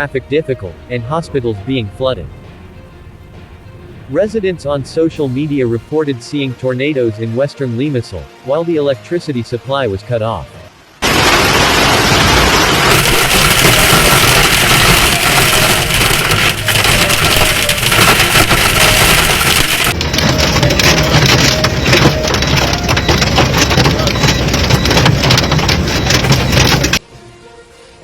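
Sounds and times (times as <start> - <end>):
heavy rain and hail clattering: 11.0 - 27.0.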